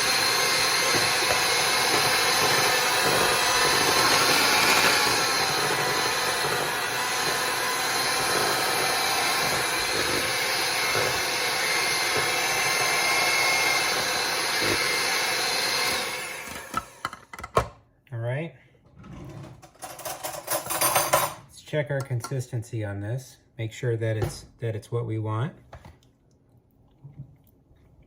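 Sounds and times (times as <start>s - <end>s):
electric hand mixer whipping cream: 0.0s - 17.1s.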